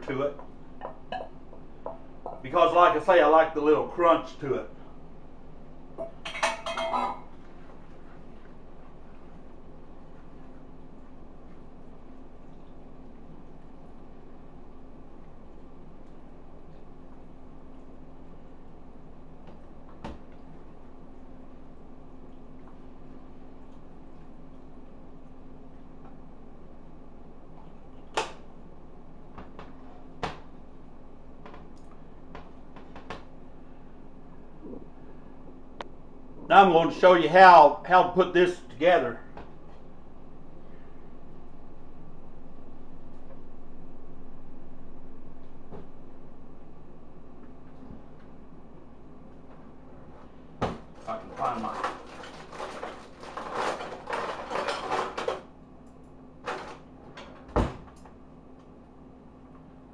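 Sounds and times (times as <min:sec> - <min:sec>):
steady low hum: 0:00.0 - 0:59.9
kitchen items knocking and clicking: 0:50.6 - 0:55.5.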